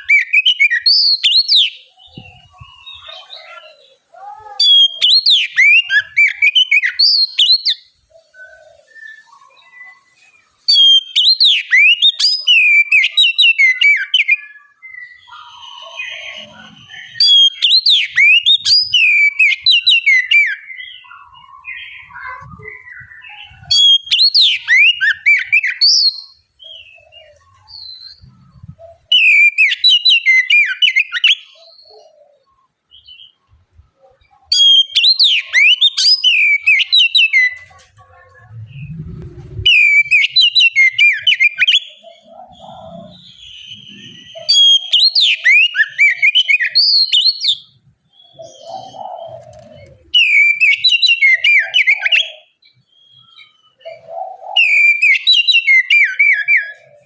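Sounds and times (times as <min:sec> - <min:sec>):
bird singing varied whistles: 0:00.0 - 0:02.9, 0:04.7 - 0:07.9, 0:10.7 - 0:26.4, 0:29.1 - 0:31.6, 0:34.5 - 0:37.7, 0:38.7 - 0:42.0, 0:43.3 - 0:47.7, 0:50.2 - 0:52.5, 0:54.5 - 0:56.8
soft scattered bird calls: 0:00.0 - 0:57.0.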